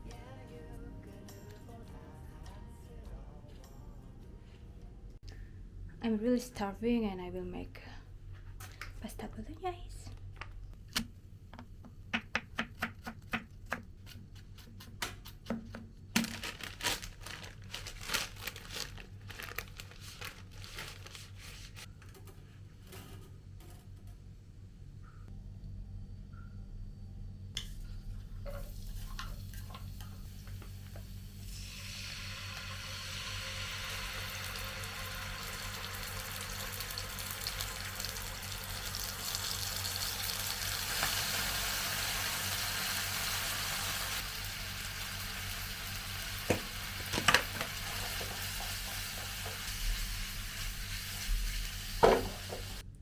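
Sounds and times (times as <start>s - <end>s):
cooking hiss on stove: 27.6s - 52.9s.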